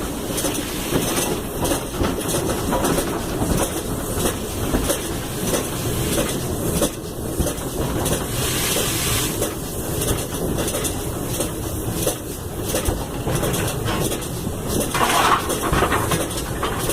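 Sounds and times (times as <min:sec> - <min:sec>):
knocking and clatter: 0:00.0 - 0:08.3, 0:09.4 - 0:16.9
steam locomotive running: 0:00.0 - 0:16.9
hiss of steam: 0:08.3 - 0:09.8.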